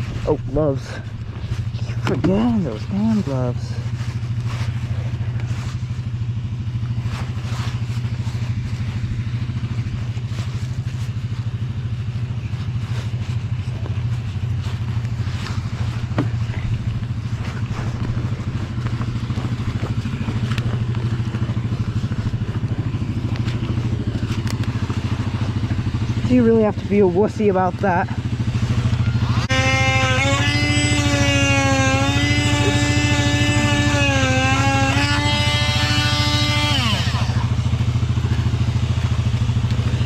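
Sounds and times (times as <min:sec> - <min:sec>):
atv engine idling: 0:00.0 - 0:40.0.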